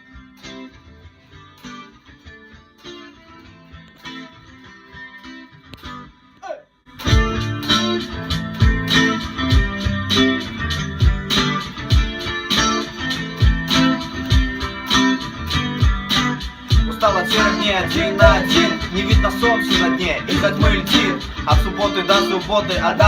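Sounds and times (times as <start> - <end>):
guitars playing: 0.0 - 23.0
steady drum beat: 8.2 - 23.0.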